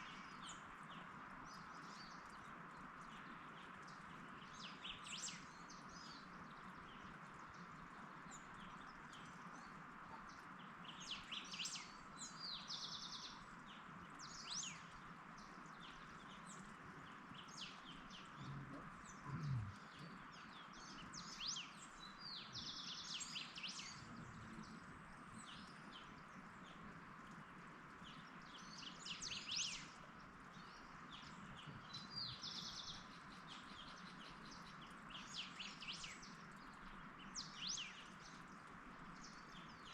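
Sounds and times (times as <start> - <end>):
birds chirping and singing: 17.8 - 26.0.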